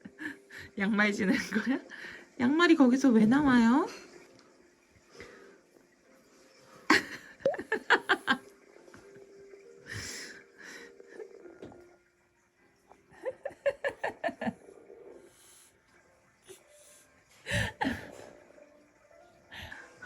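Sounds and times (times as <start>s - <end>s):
hissing breaths: 3.9s - 8.6s, 9.6s - 12.0s, 14.2s - 18.7s, 19.4s - 20.0s
breathy laughter: 6.9s - 8.5s, 13.1s - 15.2s.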